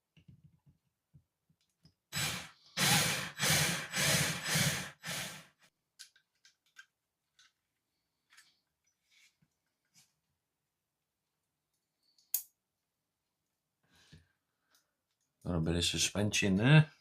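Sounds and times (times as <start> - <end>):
person blowing puffs: 2.1 - 5.6.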